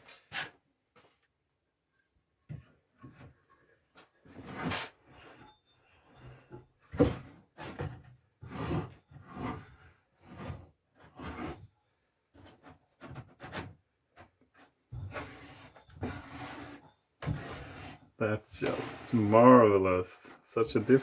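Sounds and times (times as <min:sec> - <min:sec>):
hand tool rubbing across wood: 0:15.1 - 0:21.0.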